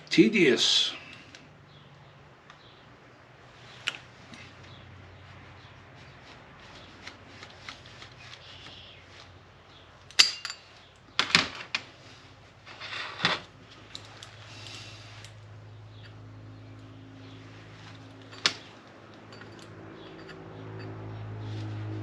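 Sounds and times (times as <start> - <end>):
tool scraping metal: 12.6 - 13.5
tools clicking on metal: 18.2 - 20.9.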